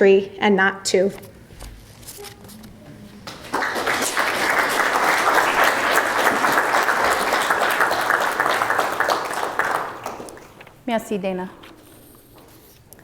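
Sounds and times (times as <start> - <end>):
crowd applauding: 3.2 - 10.8.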